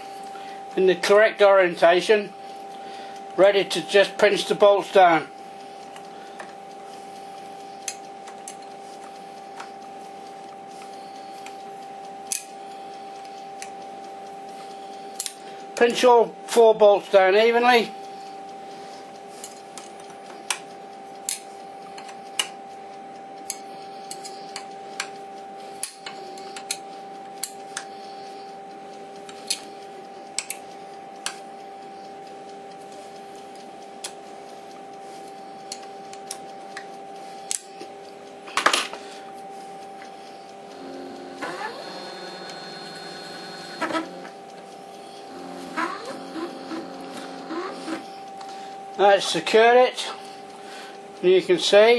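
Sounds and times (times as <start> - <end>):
lathe humming: 39.2 - 51.9.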